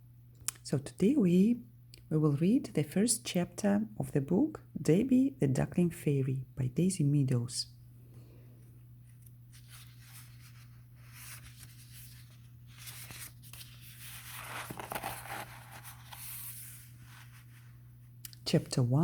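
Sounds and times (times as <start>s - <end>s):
low steady hum: 0.0s - 19.0s
paper rustling and crinkling: 9.1s - 17.8s.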